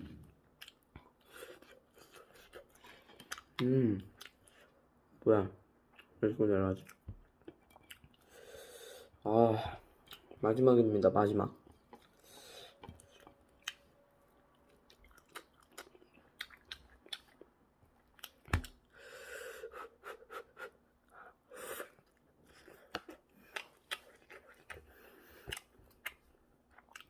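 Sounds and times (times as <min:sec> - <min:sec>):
chewing food: 0:00.6 - 0:04.8, 0:06.8 - 0:08.3, 0:11.6 - 0:18.9, 0:21.9 - 0:27.0.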